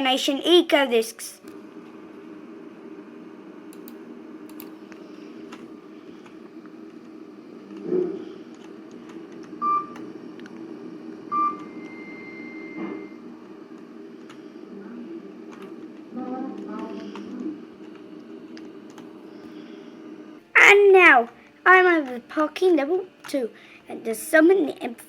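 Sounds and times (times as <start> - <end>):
steady low hum: 0.0 - 25.0
lift electronic beeps: 9.6 - 10.0, 11.3 - 13.2.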